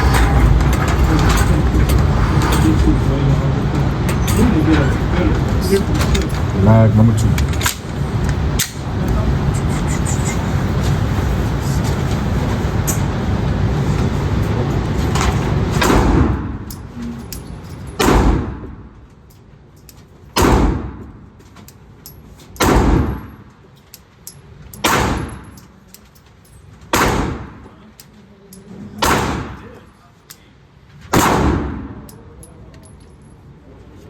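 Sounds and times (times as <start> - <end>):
rushing background noise: 0.0 - 34.0
pistol shots echoing: 22.6 - 23.3, 24.8 - 25.5, 26.9 - 27.6, 29.0 - 29.8, 31.1 - 32.0.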